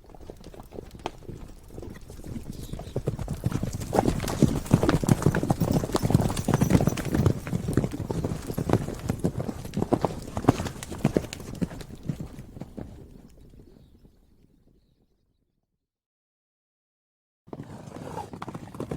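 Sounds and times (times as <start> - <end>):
horse hooves clip-clopping: 0.0 - 14.5.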